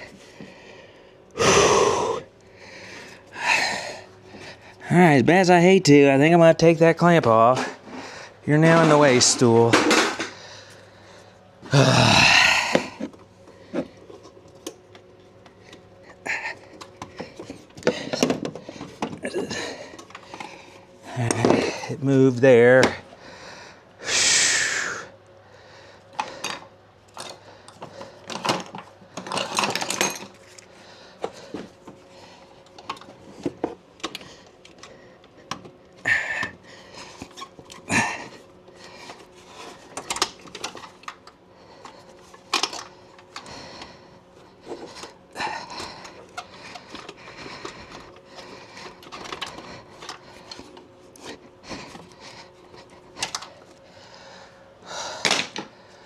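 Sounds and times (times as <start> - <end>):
tools and engine parts clinking: 26.1 - 31.7, 39.1 - 43.5, 44.7 - 52.1.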